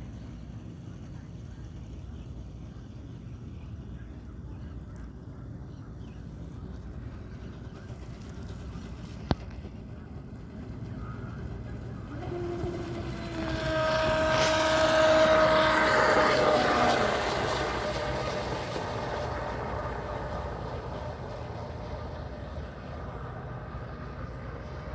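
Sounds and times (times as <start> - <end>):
rc boat motor whine: 10.1 - 24.9.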